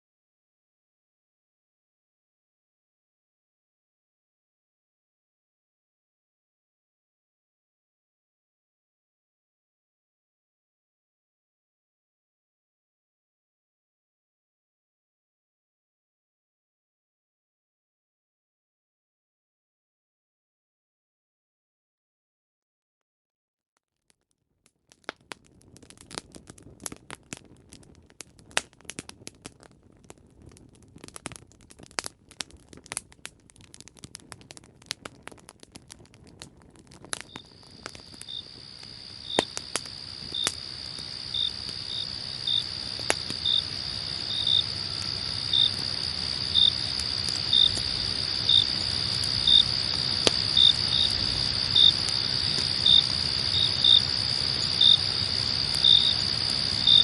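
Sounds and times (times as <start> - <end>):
campfire crackling and popping: 24.1 - 57.0
crickets chirping: 37.2 - 57.0.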